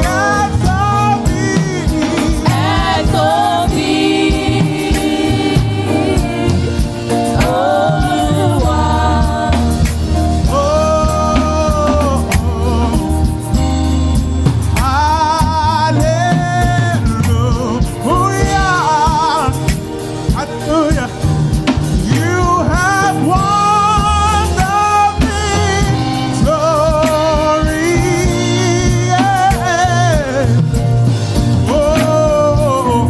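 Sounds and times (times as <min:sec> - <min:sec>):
person singing with vibrato: 0:00.0 - 0:13.7
gospel band with bass and drums: 0:00.0 - 0:33.0.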